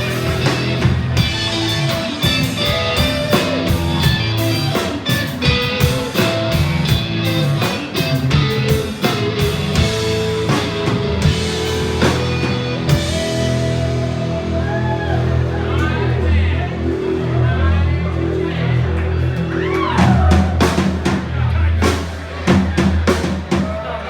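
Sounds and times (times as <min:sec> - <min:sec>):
drums hitting quickly: 0:00.0 - 0:14.0, 0:20.0 - 0:24.0
live band playing: 0:00.0 - 0:16.2, 0:19.6 - 0:23.7.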